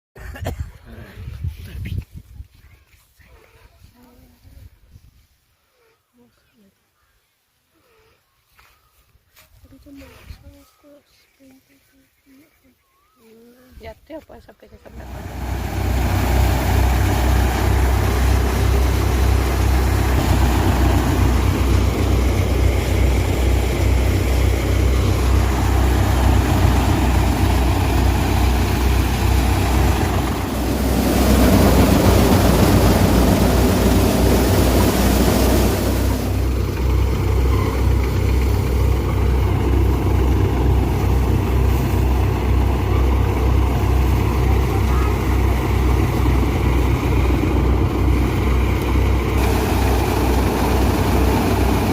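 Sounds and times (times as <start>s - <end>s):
threshing machinery throbbing: 14.9s - 51.9s
loud rushing noise: 15.0s - 37.3s, 43.6s - 51.9s.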